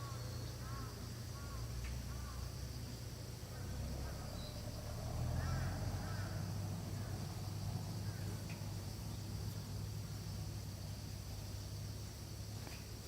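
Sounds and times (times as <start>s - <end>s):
low steady rumble: 0.0s - 13.0s
bird chirps: 4.2s - 4.7s.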